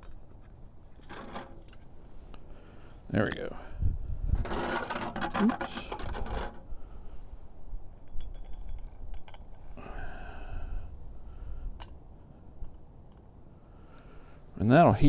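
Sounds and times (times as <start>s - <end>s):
metallic clinks: 8.0s - 9.7s.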